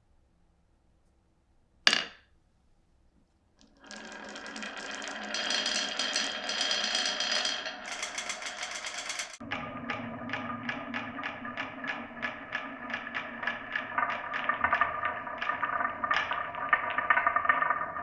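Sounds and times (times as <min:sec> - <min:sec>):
marble clack: 0:01.9 - 0:02.3, 0:03.6 - 0:09.5
marbles rolling along wooden tracks: 0:03.6 - 0:18.0.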